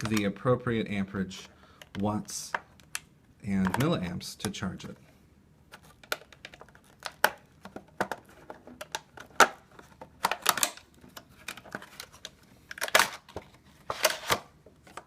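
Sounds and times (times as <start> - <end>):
plastic and cardboard packaging handled: 5.7 - 15.0.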